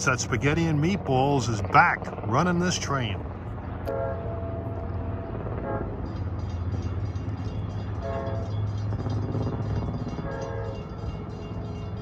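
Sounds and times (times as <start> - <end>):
locomotive low rumble: 3.2 - 12.0
locomotive horn blasts: 3.8 - 4.8, 5.6 - 6.0, 8.0 - 8.7, 10.1 - 11.0
fast high-pitched ringing: 4.4 - 12.0.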